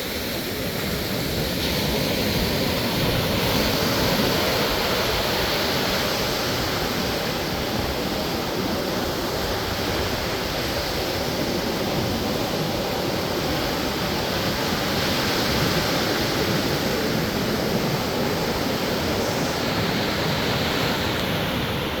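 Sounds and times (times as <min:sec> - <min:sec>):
ocean waves and surf: 0:00.0 - 0:22.0.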